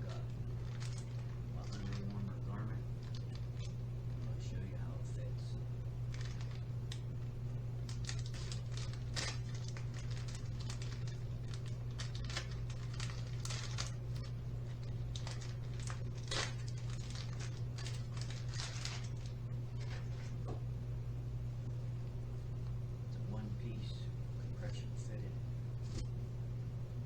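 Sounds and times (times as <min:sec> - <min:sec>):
fabric rustling and crinkling: 0:00.0 - 0:04.4, 0:06.1 - 0:06.7, 0:07.8 - 0:20.5
steady low hum: 0:00.0 - 0:27.0.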